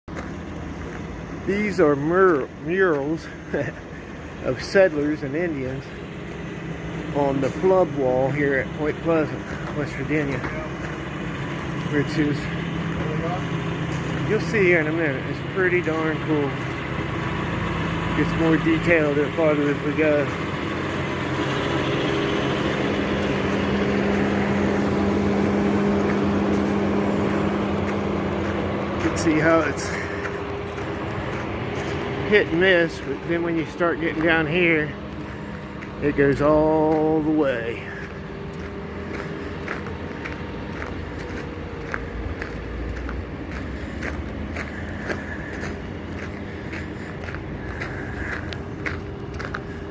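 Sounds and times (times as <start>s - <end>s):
vehicle engine running: 0.0s - 49.9s
footsteps on pavement: 0.1s - 49.9s
steady low rumble: 0.1s - 49.9s.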